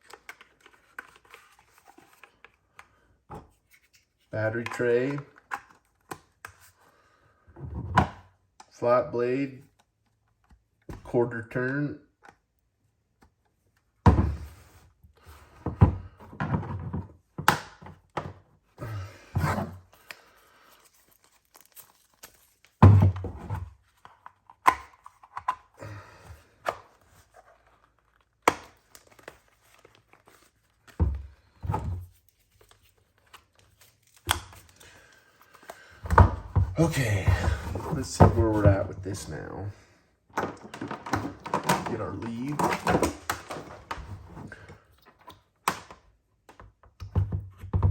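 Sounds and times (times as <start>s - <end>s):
plastic case handling knocks and clicks: 40.4s - 44.2s.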